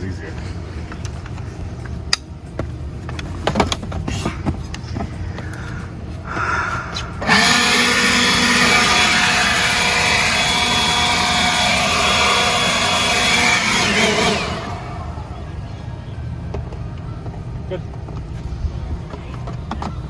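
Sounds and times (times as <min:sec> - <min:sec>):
leaf blower running: 0:06.3 - 0:15.8.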